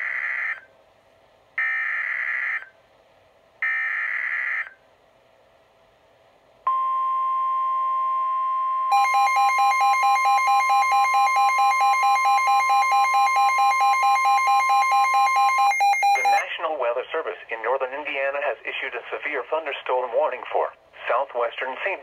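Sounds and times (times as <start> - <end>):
steady alarm tone: 6.7 - 16.4
rapid pulsing beep: 8.9 - 16.4.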